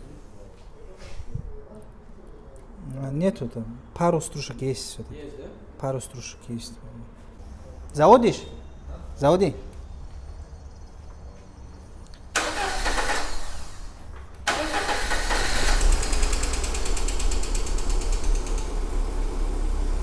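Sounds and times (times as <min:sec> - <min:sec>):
car engine starting and running: 0:12.3 - 0:20.0.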